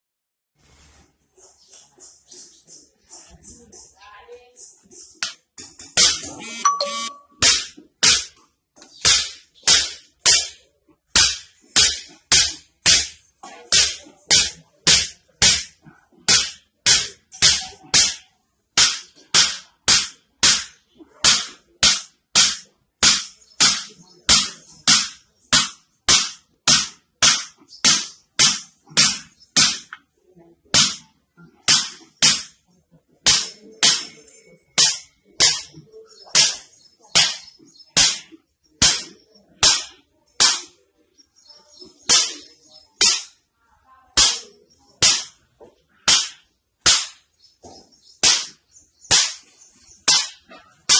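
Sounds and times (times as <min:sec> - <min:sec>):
hammer striking a back: 0:09.0 - 0:18.2, 0:18.8 - 0:30.0, 0:46.1 - 0:49.4, 0:50.1 - 0:50.9.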